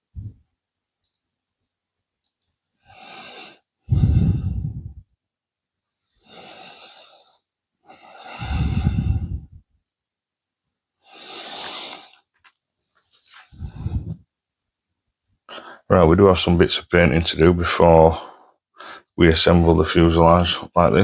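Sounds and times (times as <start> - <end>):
person breathing close to microphone: 2.8 - 5.2, 6.1 - 9.8, 11.0 - 12.3, 13.0 - 14.3, 15.5 - 15.9, 18.1 - 19.2.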